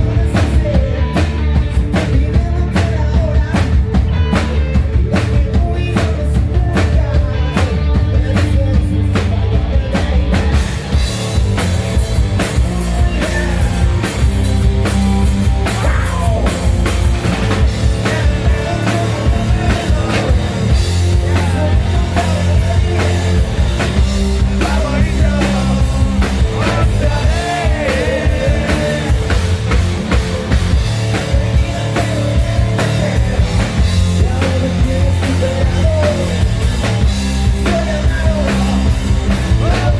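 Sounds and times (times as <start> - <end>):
hard rock band playing: 0.0 - 39.9
person singing: 12.4 - 14.3, 15.6 - 16.9, 17.6 - 39.9.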